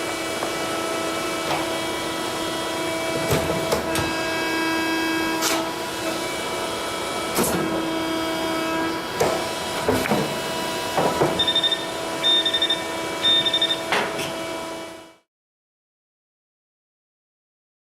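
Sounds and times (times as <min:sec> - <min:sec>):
sheet metal machine humming: 0:00.0 - 0:15.2
rapid high beeping: 0:11.4 - 0:13.8.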